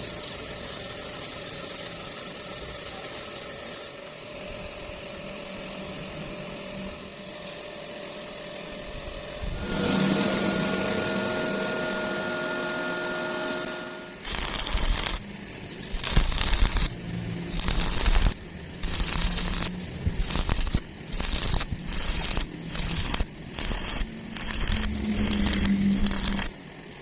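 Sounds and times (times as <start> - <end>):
machine running with hiss: 0.0 - 12.2, 13.4 - 27.0
held tones: 12.7 - 15.2.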